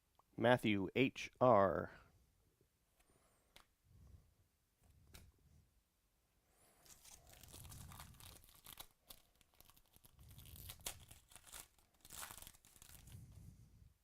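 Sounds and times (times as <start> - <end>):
foil wrapper tearing and crinkling: 6.8 - 13.2.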